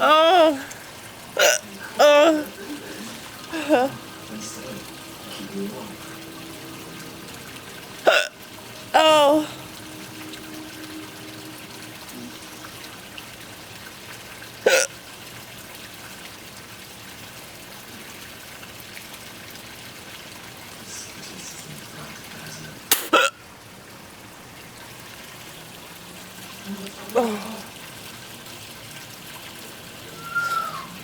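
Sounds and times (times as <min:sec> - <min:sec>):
rain hissing: 0:00.0 - 0:18.4, 0:19.3 - 0:31.0
person hiccuping: 0:01.4 - 0:02.6, 0:03.5 - 0:04.0, 0:08.0 - 0:08.3, 0:09.0 - 0:09.6, 0:14.7 - 0:14.9, 0:22.9 - 0:23.4.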